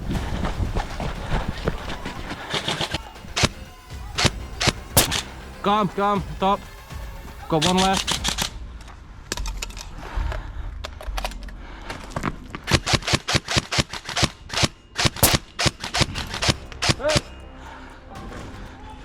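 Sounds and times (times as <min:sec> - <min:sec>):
airsoft rifle shots: 0:01.2 - 0:06.1, 0:07.5 - 0:09.9, 0:12.7 - 0:17.3.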